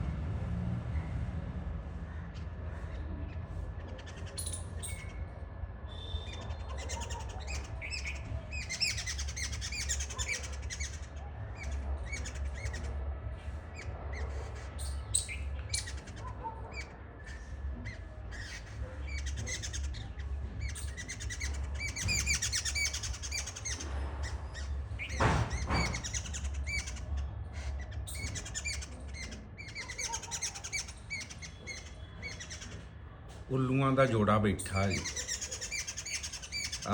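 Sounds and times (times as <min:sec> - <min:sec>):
low rumble: 0:00.0 - 0:03.8
birds chirping and calling: 0:00.9 - 0:36.9
loud harsh bird call: 0:03.8 - 0:33.2, 0:33.8 - 0:36.9.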